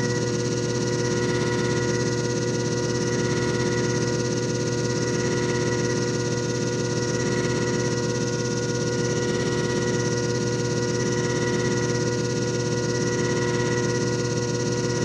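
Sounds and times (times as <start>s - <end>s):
disc repair machine motor hum: 0.0s - 4.2s, 8.9s - 15.0s.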